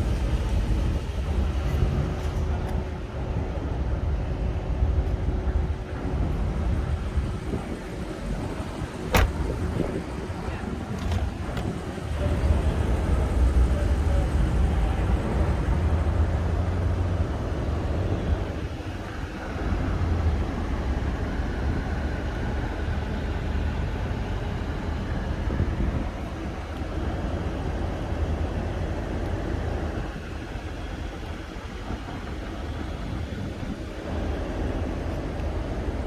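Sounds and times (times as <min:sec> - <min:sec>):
car engine running: 0:08.4 - 0:10.0.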